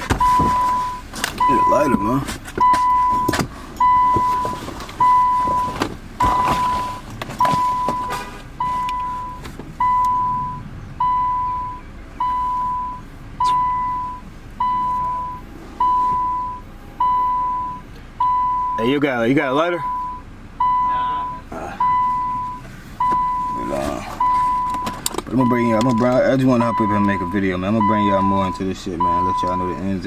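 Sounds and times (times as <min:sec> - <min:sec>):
car warning chime beeping: 0:00.0 - 0:30.0.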